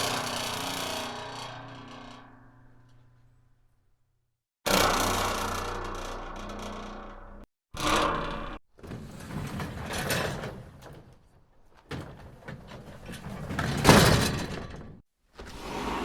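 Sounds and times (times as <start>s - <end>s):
door rumbling: 4.7s - 16.0s.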